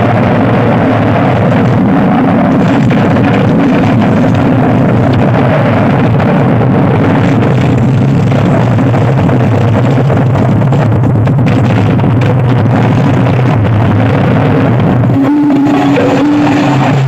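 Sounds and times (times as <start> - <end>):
loud distorted bass-heavy dj music: 12.6 - 17.0.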